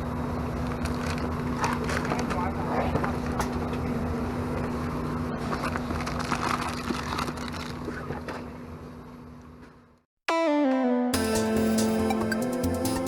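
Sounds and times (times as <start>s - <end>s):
electronic synthesizer music: 10.3s - 13.0s.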